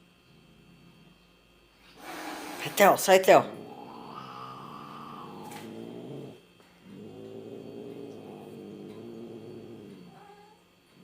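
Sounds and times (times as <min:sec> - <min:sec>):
cat growling: 0:03.3 - 0:11.0.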